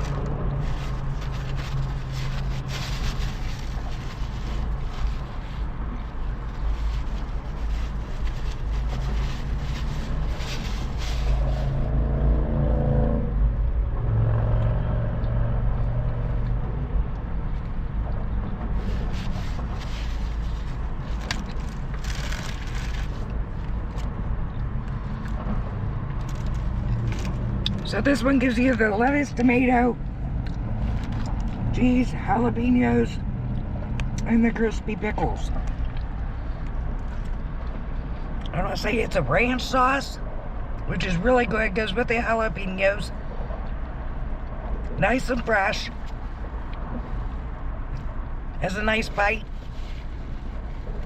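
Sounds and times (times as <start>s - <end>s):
car engine rumble: 0.0s - 51.0s
paper wrapper crinkling: 18.9s - 23.3s.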